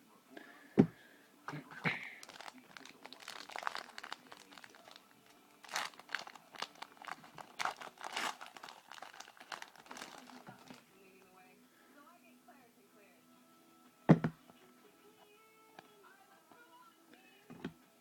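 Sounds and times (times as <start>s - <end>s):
single thump: 14.1s - 14.4s.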